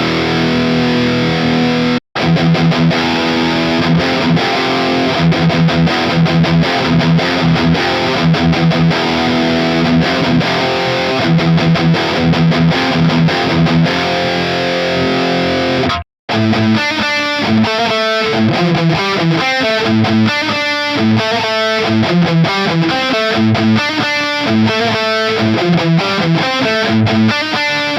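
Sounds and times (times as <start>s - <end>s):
distorted electric guitar riff: 0.0s - 27.9s.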